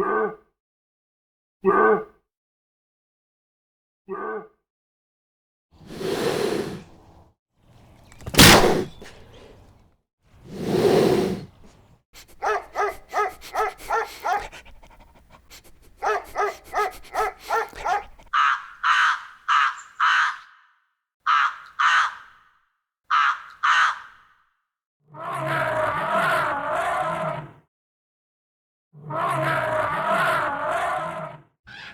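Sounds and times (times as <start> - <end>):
noisy animal blasts: 8.1 - 9.6
short harsh animal calls: 8.2 - 9.6.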